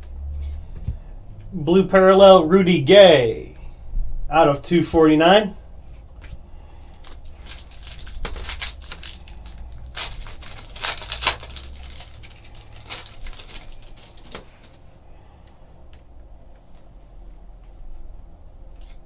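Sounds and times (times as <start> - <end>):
card wrappers crinkling: 6.8 - 14.9.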